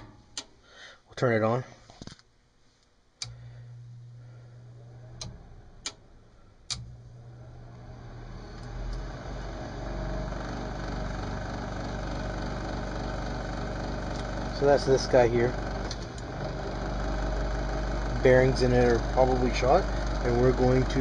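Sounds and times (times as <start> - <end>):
clicks: 1.9 - 3.6, 6.6 - 7.0
furnace fan motor running roughly: 3.2 - 21.0
low hum: 3.2 - 21.0.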